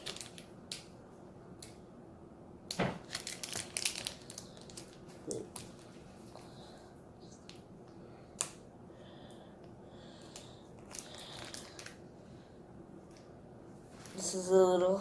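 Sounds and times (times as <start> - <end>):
foil pack crinkling: 0.0 - 0.9, 2.8 - 6.8, 10.2 - 12.0.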